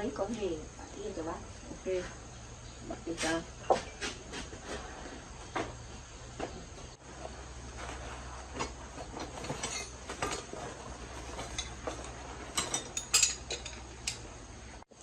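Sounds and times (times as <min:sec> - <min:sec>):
metal tools clinking: 0:09.0 - 0:14.3.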